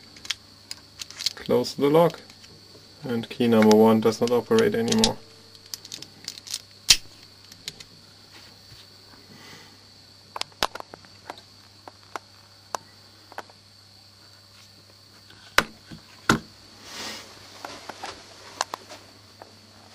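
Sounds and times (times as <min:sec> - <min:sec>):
keys and lock clicking: 0:03.6 - 0:06.6.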